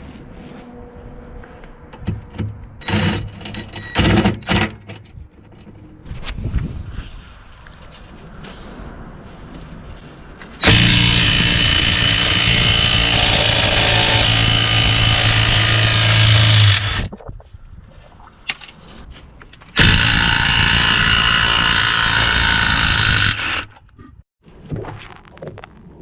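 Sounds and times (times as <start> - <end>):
impact wrench running: 2.8 - 4.7, 10.6 - 17.1, 19.8 - 23.7.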